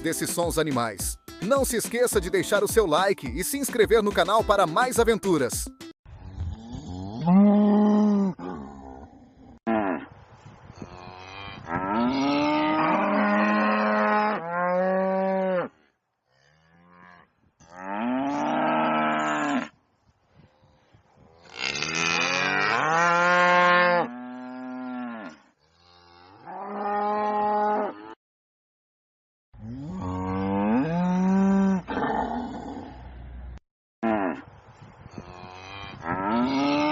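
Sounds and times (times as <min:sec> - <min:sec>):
cattle mooing: 0:11.0 - 0:19.7, 0:21.4 - 0:28.2, 0:29.7 - 0:33.1, 0:35.3 - 0:36.9.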